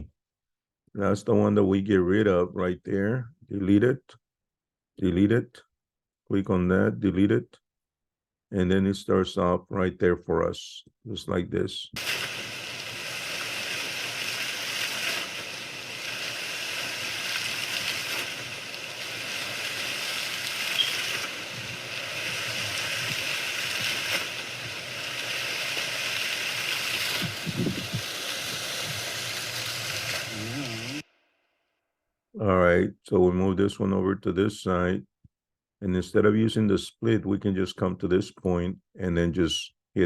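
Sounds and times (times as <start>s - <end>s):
fountain water splashing: 12.0s - 31.0s.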